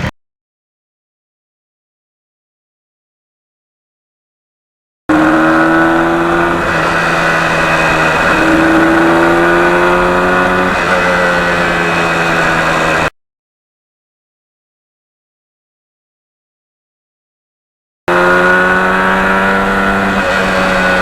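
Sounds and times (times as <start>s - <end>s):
two-stroke engine accelerating: 5.1s - 13.1s, 18.1s - 21.0s.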